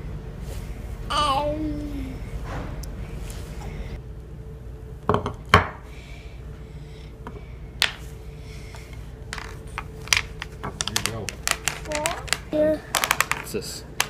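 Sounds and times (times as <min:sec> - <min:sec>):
steady low hum: 0:00.0 - 0:14.0
puzzle pieces clicking and knocking: 0:09.4 - 0:13.6.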